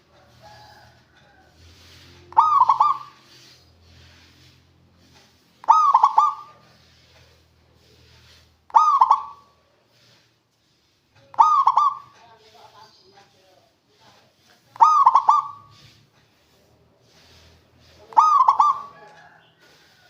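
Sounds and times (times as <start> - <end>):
dove cooing: 2.2 - 3.5, 5.6 - 6.9, 8.7 - 9.6, 11.4 - 12.2, 14.8 - 15.8, 18.1 - 19.8.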